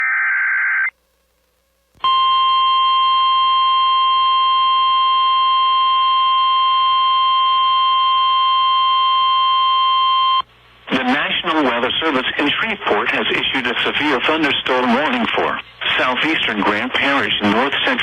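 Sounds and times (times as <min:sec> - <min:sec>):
steady single-pitch alarm tone: 0:02.0 - 0:10.4.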